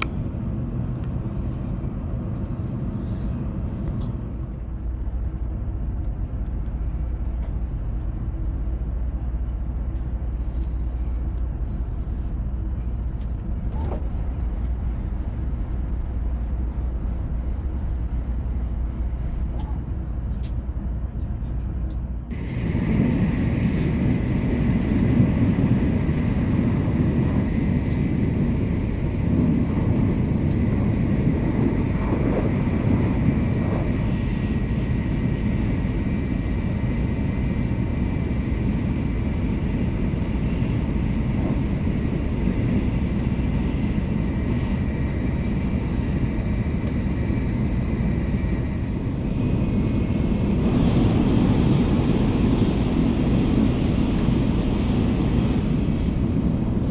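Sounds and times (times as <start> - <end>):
train cabin low rumble: 0.0 - 56.9.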